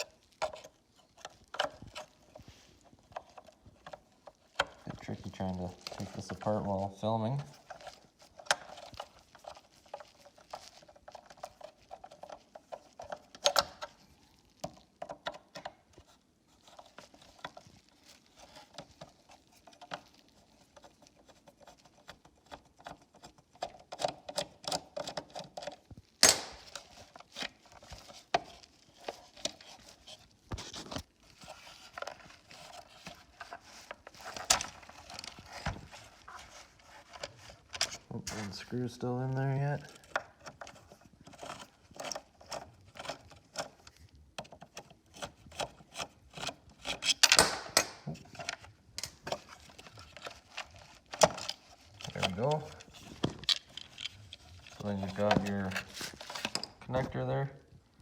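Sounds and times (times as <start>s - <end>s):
plastic handling noise: 0.0s - 58.0s
scraping: 47.8s - 57.4s.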